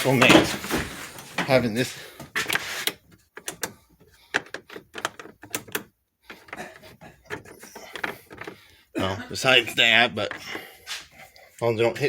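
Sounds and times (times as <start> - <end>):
light clicks and knocks: 2.2 - 8.8.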